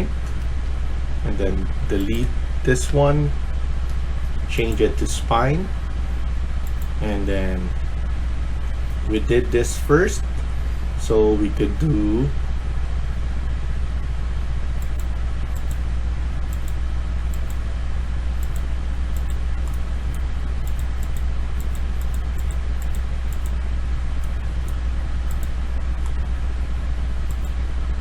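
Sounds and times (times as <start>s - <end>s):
low electrical hum: 0.0s - 28.0s
computer mouse clicks: 2.0s - 2.3s, 6.6s - 7.0s, 14.8s - 15.8s, 16.5s - 17.6s, 18.4s - 23.6s, 24.2s - 25.7s, 27.3s - 27.6s.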